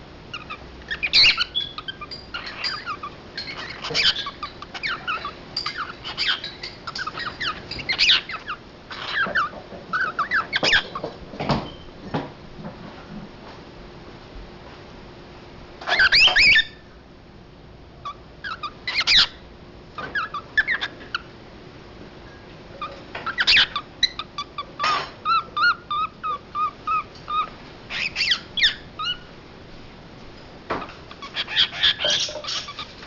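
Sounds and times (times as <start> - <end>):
cockatiel chirps and whistles: 0.4 - 9.4, 15.9 - 16.8, 18.5 - 19.4.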